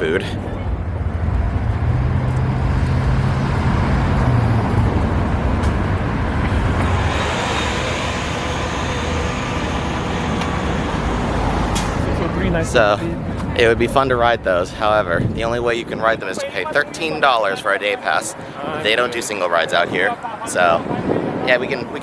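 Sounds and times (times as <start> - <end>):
heavy vehicle engine hum: 0.0 - 15.4
traffic noise: 0.0 - 22.0.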